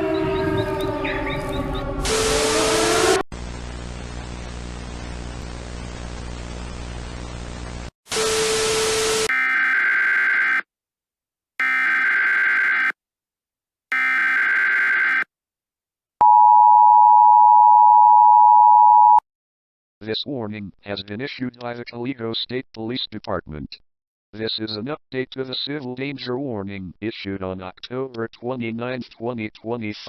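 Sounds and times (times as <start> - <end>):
screechy data tones: 11.6 - 12.9, 13.9 - 15.2
two-tone attention signal: 16.2 - 19.2.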